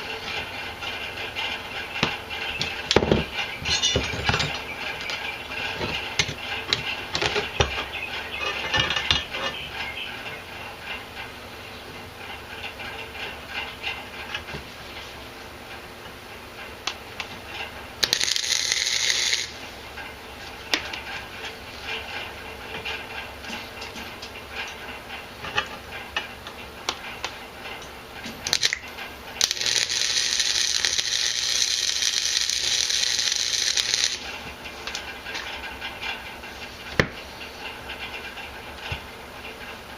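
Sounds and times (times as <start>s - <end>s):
welding arc crackling: 17.9s - 20.0s, 28.4s - 35.4s
metal pieces clicking and rattling: 28.4s - 28.8s, 29.4s - 34.2s.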